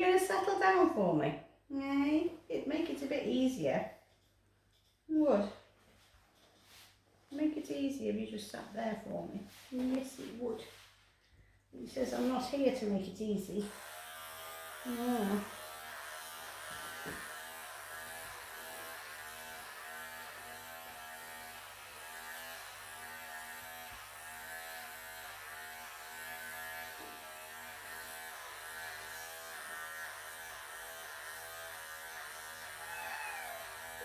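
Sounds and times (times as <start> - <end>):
electric pet clippers buzzing: 13.6 - 34.0.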